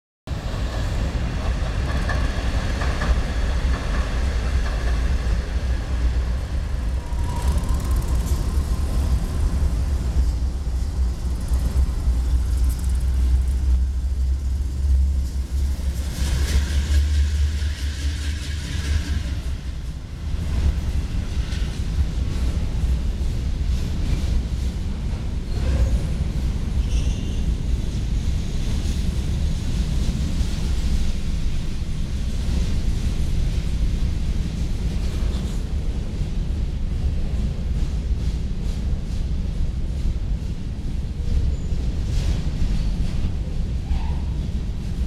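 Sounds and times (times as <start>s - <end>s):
locomotive engines rumbling: 0.3s - 23.3s.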